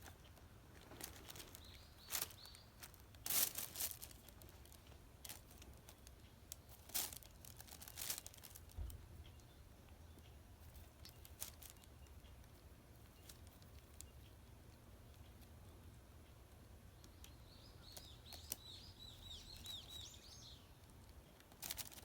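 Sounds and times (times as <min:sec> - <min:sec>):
grass rustling and tearing: 0:00.8 - 0:06.0, 0:06.6 - 0:08.8, 0:21.5 - 0:22.0.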